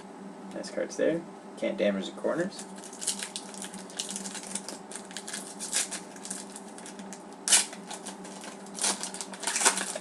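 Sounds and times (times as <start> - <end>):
faint steady hum: 0.0 - 10.0.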